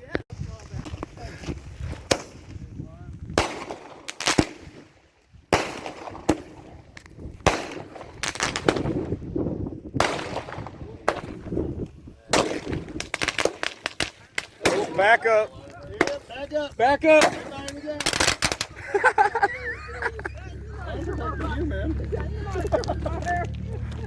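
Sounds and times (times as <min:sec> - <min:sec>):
fireworks bangs: 0:05.5 - 0:09.3, 0:09.9 - 0:20.7.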